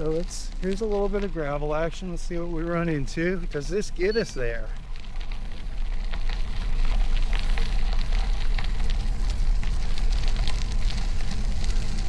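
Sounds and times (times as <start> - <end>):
bicycle tyres crunching on gravel: 0.0 - 12.0
wind rumble on microphone: 4.7 - 12.0.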